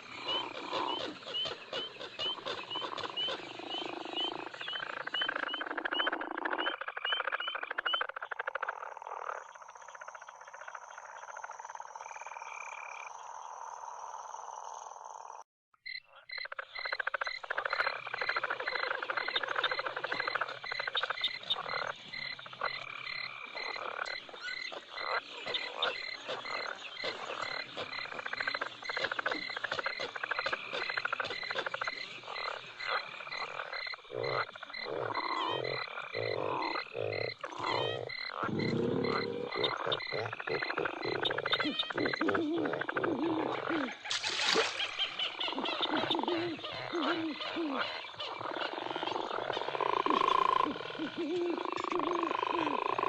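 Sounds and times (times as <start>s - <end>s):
frogs croaking: 0.0s - 53.0s.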